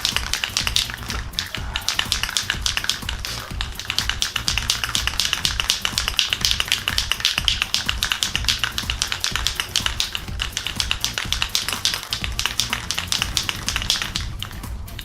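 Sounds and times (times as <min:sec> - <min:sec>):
background music: 0:00.0 - 0:15.0
spray can ball rattling: 0:00.0 - 0:15.0.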